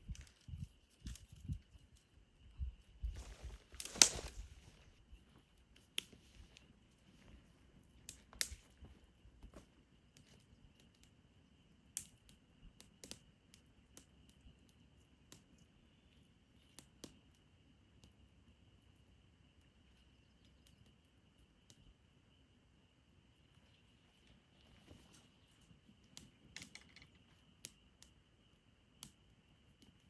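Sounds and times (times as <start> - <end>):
rustle: 0.0 - 10.6
small clicks and knocks: 25.0 - 28.2.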